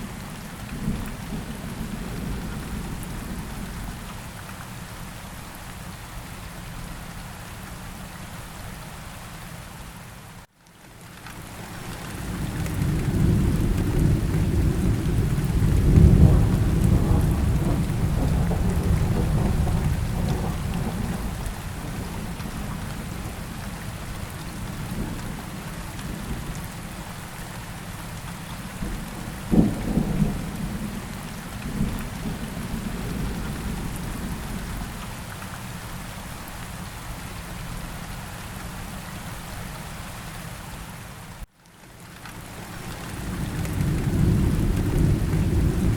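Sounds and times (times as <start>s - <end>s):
steady rain: 0.0s - 45.9s
low rumbling thunder: 12.3s - 26.6s, 28.8s - 35.0s, 43.0s - 45.9s
sharp thunderclap: 13.2s - 22.0s.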